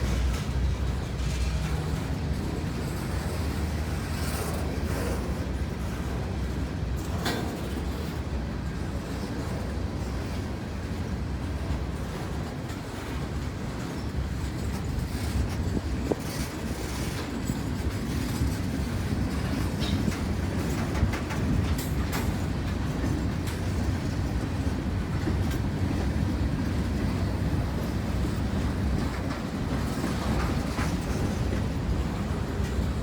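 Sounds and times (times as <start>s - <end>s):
train wheels rumbling on rail: 0.0s - 33.0s
clicks and clacks: 11.7s - 27.2s, 27.8s - 33.0s.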